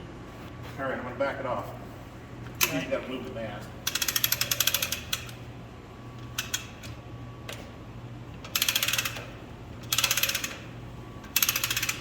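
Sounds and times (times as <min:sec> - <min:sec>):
hand ratchet clicking: 0:03.9 - 0:05.4, 0:08.5 - 0:10.6, 0:11.3 - 0:12.0.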